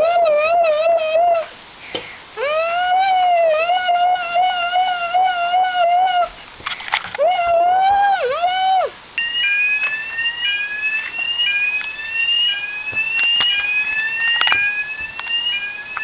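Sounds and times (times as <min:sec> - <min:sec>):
fire alarm rising sweep: 0:09.2 - 0:16.0.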